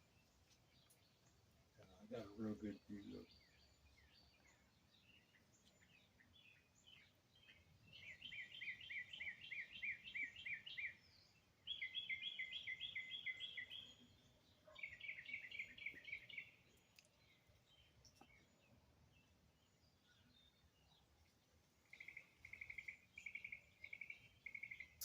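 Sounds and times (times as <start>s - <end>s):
songbird singing: 0.0s - 25.0s
faint bird chips: 21.8s - 25.0s.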